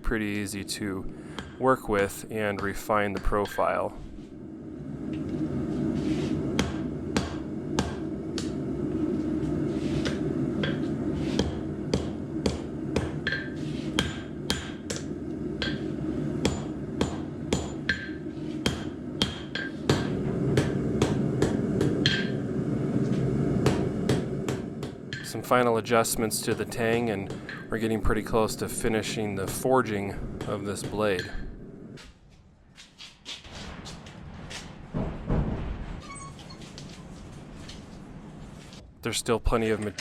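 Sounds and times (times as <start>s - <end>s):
low rushing noise: 0.0s - 32.0s
hammer on metal blade: 10.0s - 22.4s.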